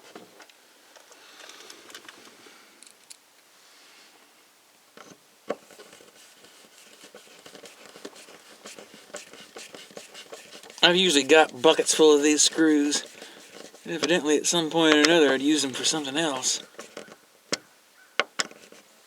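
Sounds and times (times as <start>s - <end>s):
faint clicks of small parts: 0.4s - 3.5s
light rustling: 5.0s - 17.2s.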